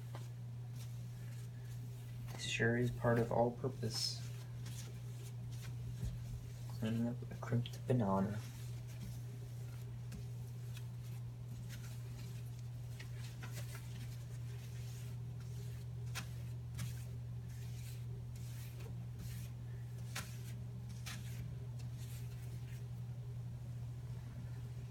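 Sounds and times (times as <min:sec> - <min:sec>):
steady low hum: 0:00.0 - 0:24.9
cloth wiping a table: 0:00.1 - 0:22.8.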